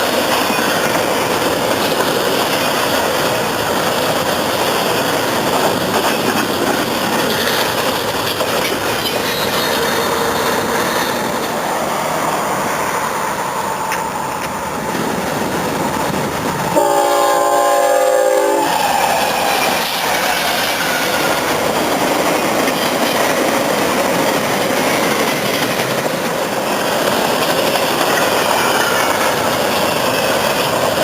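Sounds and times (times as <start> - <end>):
train wheels rumbling on rails: 0.0 - 31.0
locomotive horn: 16.8 - 19.8.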